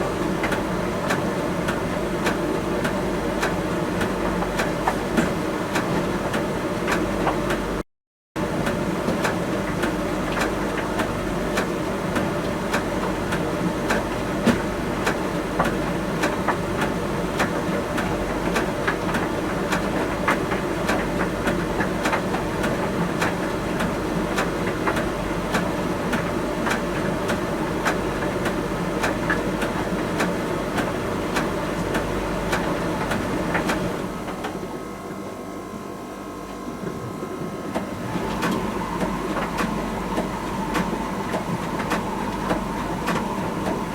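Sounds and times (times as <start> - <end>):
tumble dryer drum turning: 36.5 - 43.9
dryer humming: 36.6 - 43.9.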